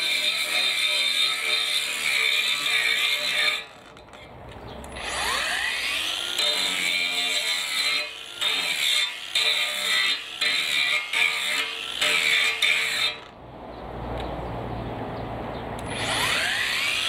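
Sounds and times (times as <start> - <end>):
angle grinder whining: 0.0 - 13.4, 15.8 - 17.0.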